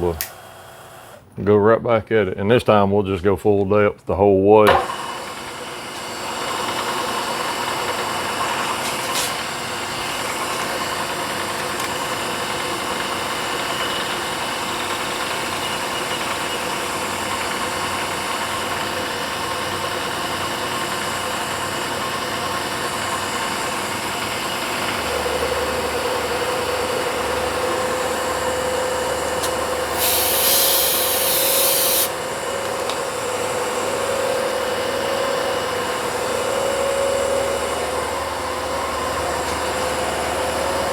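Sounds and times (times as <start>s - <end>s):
mill spindle and cutting noise: 0.0s - 1.3s, 4.6s - 40.9s
brief hiss: 29.9s - 32.2s.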